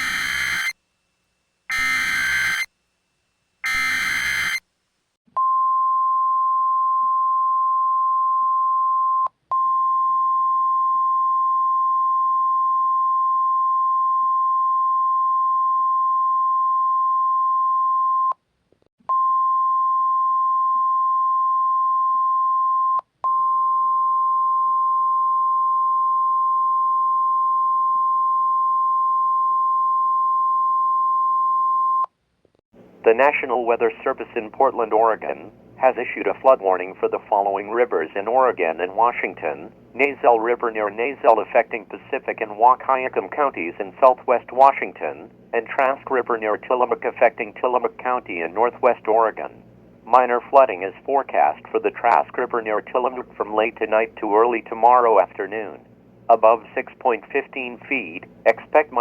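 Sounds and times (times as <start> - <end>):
steady warning alarm tone: 0.0 - 0.8, 1.7 - 2.7, 3.6 - 4.6.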